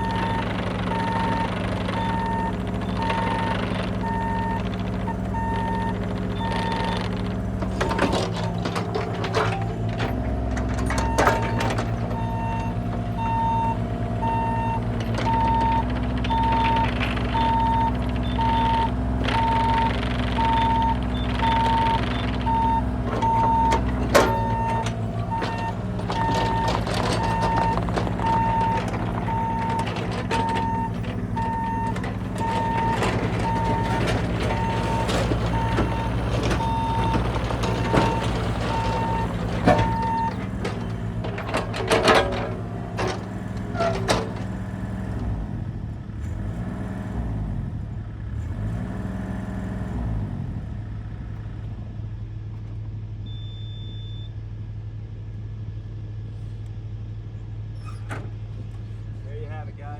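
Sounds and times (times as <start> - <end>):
metal clanks: 0.0 - 13.2, 14.8 - 44.8
excavator diesel engine: 0.0 - 59.9
warning alarm beeping: 10.9 - 43.2.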